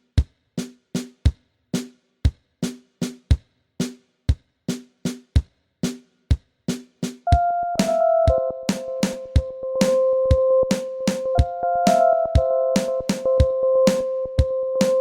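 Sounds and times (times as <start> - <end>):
electronic drum beat: 6.7 - 15.0.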